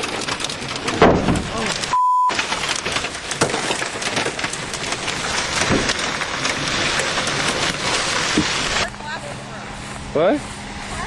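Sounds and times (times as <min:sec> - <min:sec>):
hailstones hammering a vehicle: 0:00.0 - 0:09.3
heavy rain: 0:00.0 - 0:10.0.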